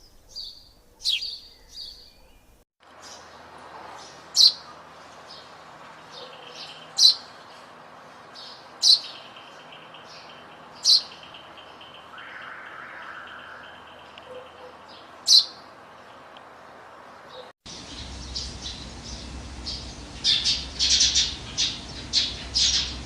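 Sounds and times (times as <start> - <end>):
sparrow chirping: 0.0 - 16.2, 17.3 - 23.0.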